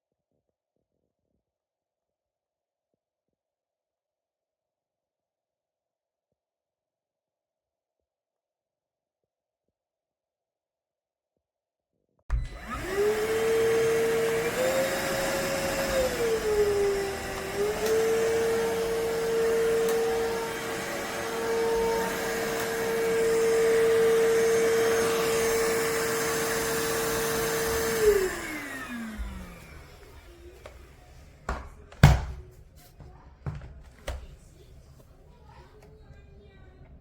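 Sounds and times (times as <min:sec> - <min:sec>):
motor spinning down: 0:12.3 - 0:30.4
stick vacuum whining: 0:12.3 - 0:32.2.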